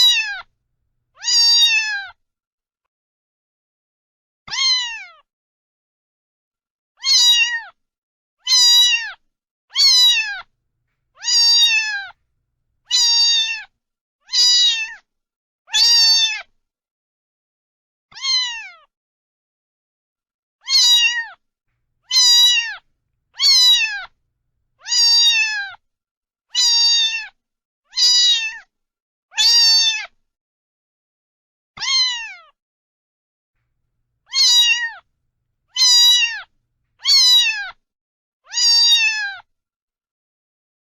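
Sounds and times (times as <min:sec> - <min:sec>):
cat meowing: 0:00.0 - 0:00.5, 0:01.2 - 0:02.1, 0:04.5 - 0:05.2, 0:07.0 - 0:07.7, 0:08.5 - 0:09.2, 0:09.8 - 0:10.5, 0:11.2 - 0:12.2, 0:12.9 - 0:13.7, 0:14.3 - 0:15.0, 0:18.1 - 0:18.8, 0:20.6 - 0:21.4, 0:22.0 - 0:24.2, 0:24.8 - 0:25.8, 0:26.6 - 0:27.3, 0:27.9 - 0:28.6, 0:31.8 - 0:32.5, 0:34.3 - 0:35.0, 0:35.7 - 0:37.7, 0:38.5 - 0:39.4.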